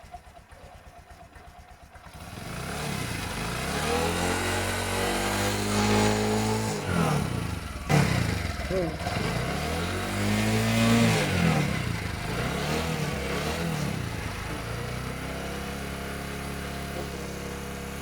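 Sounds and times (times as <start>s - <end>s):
motorcycle engine revving and idling: 0.0s - 18.0s.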